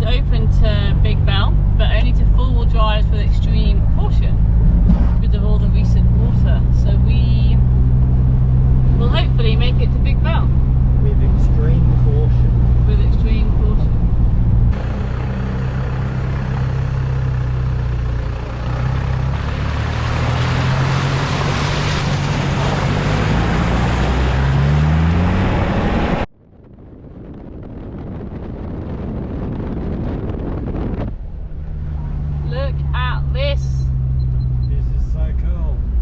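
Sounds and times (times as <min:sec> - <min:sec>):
quiet rumble: 0:00.0 - 0:20.4
car engine running: 0:00.0 - 0:36.0
road and wind rush: 0:00.0 - 0:36.0.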